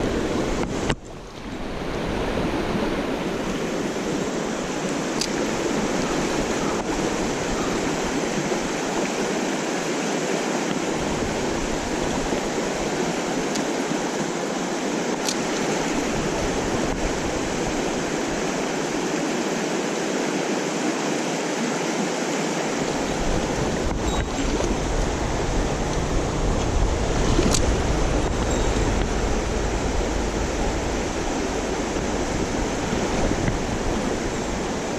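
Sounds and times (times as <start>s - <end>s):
stream rushing over rocks: 0.0s - 34.9s
low rumble: 23.2s - 34.6s.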